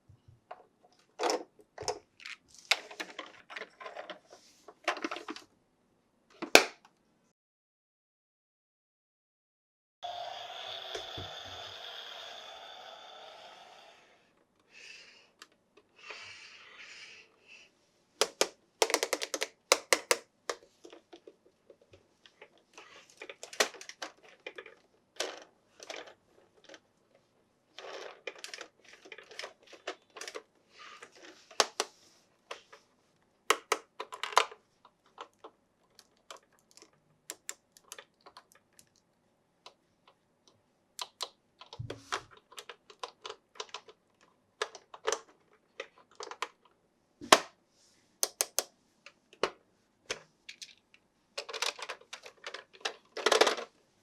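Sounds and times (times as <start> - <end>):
crinkly packaging rustles: 2.1 - 5.5, 20.6 - 32.9
soft sliding rustles: 3.9 - 4.8
sharp clicks and taps on packaging: 18.2 - 20.6, 36.7 - 38.9, 48.2 - 48.7.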